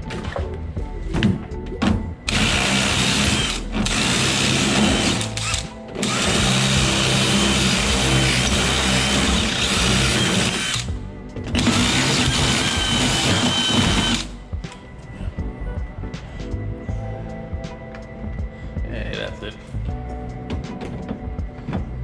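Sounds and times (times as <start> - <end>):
electric drill drilling: 2.3 - 10.9, 11.6 - 14.4.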